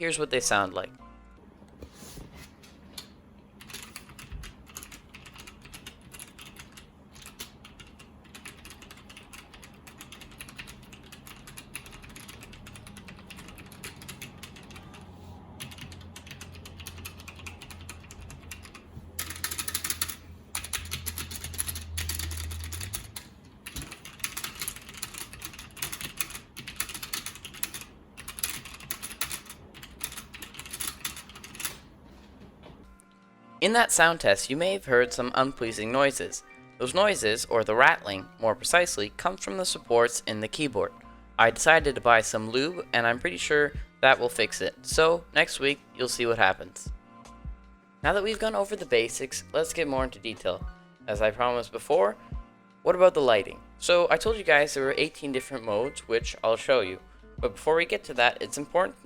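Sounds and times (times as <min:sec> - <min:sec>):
mechanical keyboard typing: 0:03.6 - 0:31.8.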